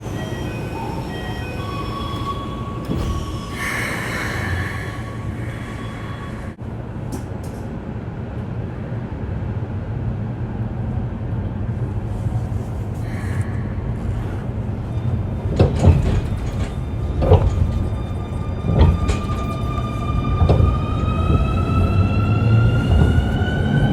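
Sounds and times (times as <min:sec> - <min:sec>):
electric train rumble: 0:00.0 - 0:23.9
rail-joint knocks: 0:15.5 - 0:18.0, 0:22.8 - 0:23.4.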